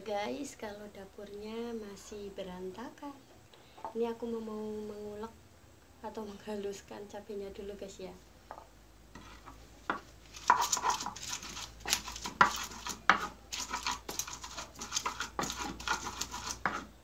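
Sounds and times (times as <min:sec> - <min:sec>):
pestle pounding and grinding: 0:09.1 - 0:17.0.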